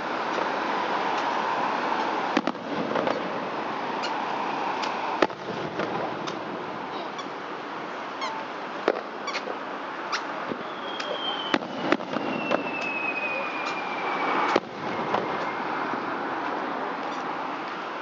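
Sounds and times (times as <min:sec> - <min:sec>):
fireworks cracking and banging: 0:00.0 - 0:04.2, 0:04.8 - 0:07.0, 0:08.7 - 0:17.8
firework whistle sliding down: 0:10.2 - 0:16.1.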